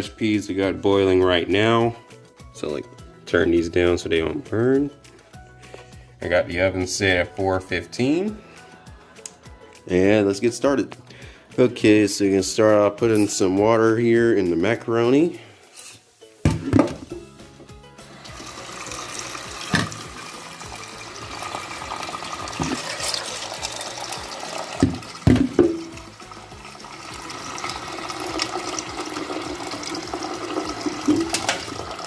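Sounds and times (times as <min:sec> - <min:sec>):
pot knocking: 0:16.5 - 0:17.3, 0:19.6 - 0:20.2, 0:22.5 - 0:23.2, 0:24.7 - 0:26.1, 0:30.9 - 0:31.8
tap running water into pot: 0:18.2 - 0:32.0.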